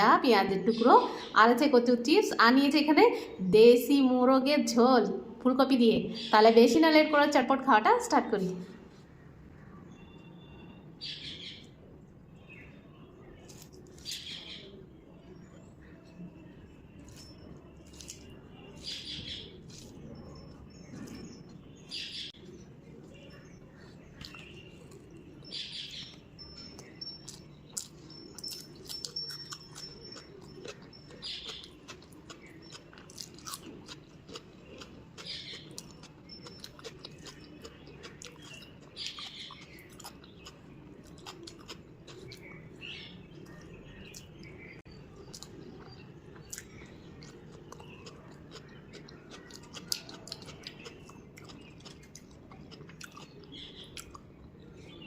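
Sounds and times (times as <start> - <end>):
birds chirping: 0.0 - 55.0
person chewing and crunching: 17.0 - 21.4, 26.1 - 42.6, 45.2 - 54.6.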